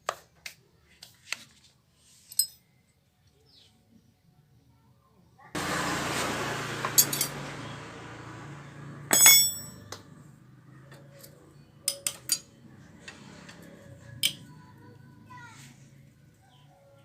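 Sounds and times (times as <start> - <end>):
metal tools clinking and knocking: 2.2 - 2.6, 6.9 - 7.4, 9.1 - 10.0, 10.9 - 14.6.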